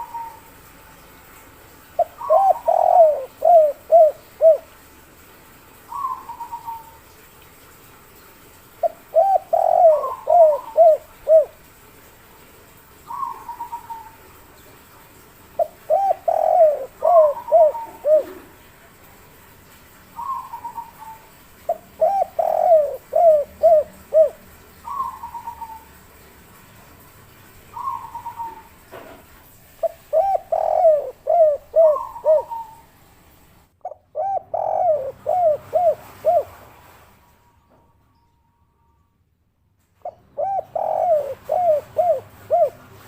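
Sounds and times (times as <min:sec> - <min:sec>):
dove cooing phrases: 0:00.0 - 0:00.5, 0:01.9 - 0:04.8, 0:05.8 - 0:07.2, 0:08.8 - 0:11.7, 0:13.0 - 0:14.6, 0:15.6 - 0:18.9, 0:20.1 - 0:26.0, 0:27.7 - 0:28.8, 0:29.8 - 0:32.9, 0:33.8 - 0:36.9, 0:40.0 - 0:43.0
higher falling coo: 0:02.0 - 0:04.7, 0:08.8 - 0:11.6, 0:15.6 - 0:18.6, 0:21.9 - 0:25.8, 0:29.8 - 0:32.8, 0:34.1 - 0:36.6, 0:40.0 - 0:43.0.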